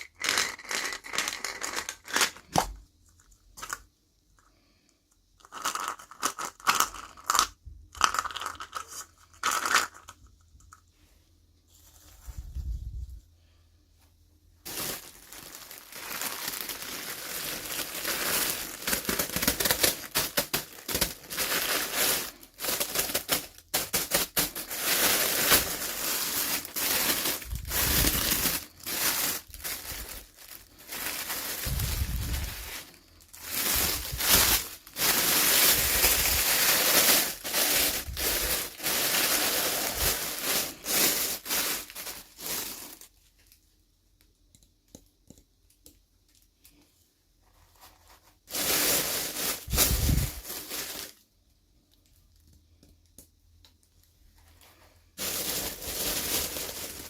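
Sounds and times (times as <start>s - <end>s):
packaging crinkling and tearing: 0.0s - 2.7s, 14.7s - 43.5s, 48.5s - 51.2s, 55.2s - 57.0s.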